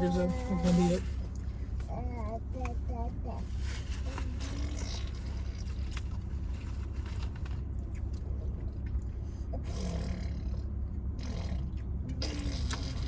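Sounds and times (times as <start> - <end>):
steady low rumble: 0.0 - 13.0
person chewing food: 4.5 - 10.0, 11.2 - 13.0.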